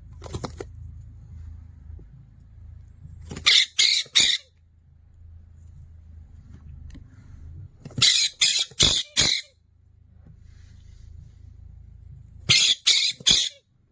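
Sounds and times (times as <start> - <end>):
parrot squawking: 3.4 - 4.5, 8.0 - 9.6, 12.5 - 13.6.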